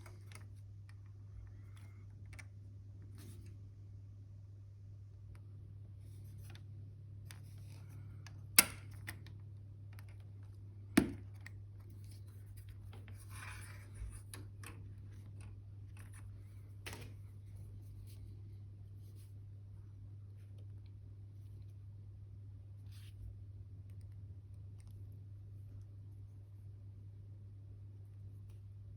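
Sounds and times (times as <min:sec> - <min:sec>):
steady low hum: 0:00.0 - 0:28.9
small parts scratching and tapping: 0:11.2 - 0:17.0.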